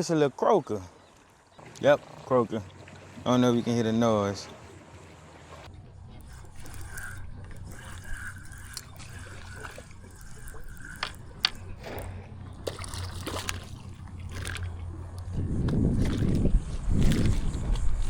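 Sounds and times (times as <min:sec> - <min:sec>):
fish croaking: 0:01.1 - 0:18.0
water dripping: 0:06.5 - 0:16.5
small splashes: 0:06.6 - 0:18.0.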